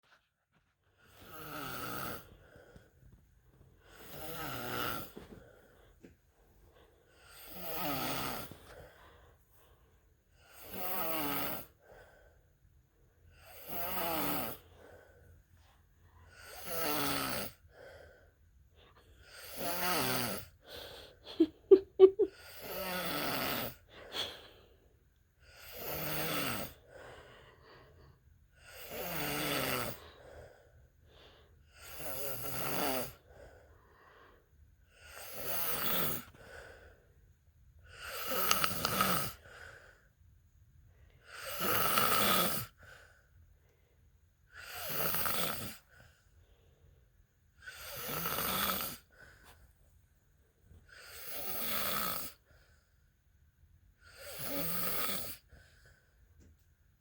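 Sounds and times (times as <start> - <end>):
man snoring: 1.1 - 2.8, 3.9 - 5.5, 7.1 - 9.0, 10.4 - 12.0, 13.3 - 15.0, 16.3 - 17.7, 19.2 - 23.9, 25.4 - 27.1, 28.6 - 30.5, 31.7 - 33.4, 34.9 - 36.8, 37.9 - 39.8, 41.2 - 42.8, 44.5 - 46.0, 47.6 - 49.2, 50.9 - 52.5, 54.0 - 55.5.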